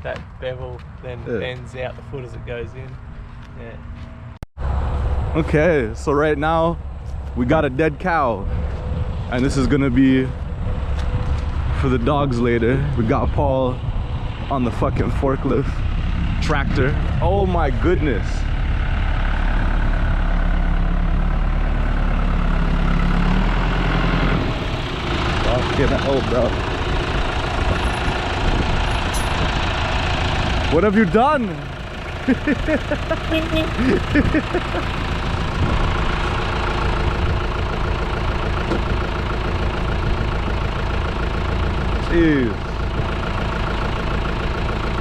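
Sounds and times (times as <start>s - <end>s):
tractor engine running: 0.0s - 45.0s.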